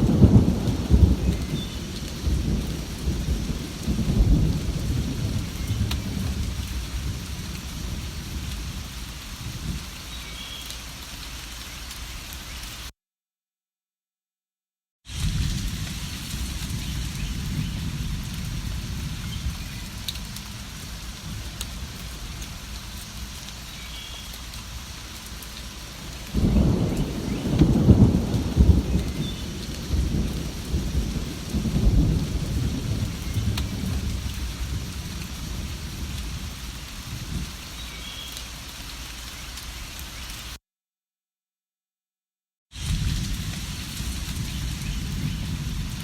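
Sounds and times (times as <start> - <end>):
thunder rumbling: 0.0 - 9.8, 15.1 - 23.8, 25.9 - 37.6, 42.8 - 46.0
steady rain falling: 0.0 - 12.9, 15.1 - 40.6, 42.8 - 46.0.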